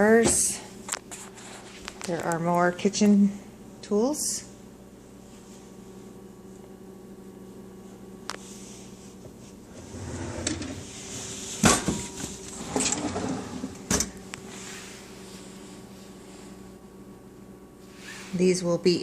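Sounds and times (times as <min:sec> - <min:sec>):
steady low hum: 0:00.0 - 0:19.0
kitchen drawers opening and shutting: 0:09.7 - 0:14.2.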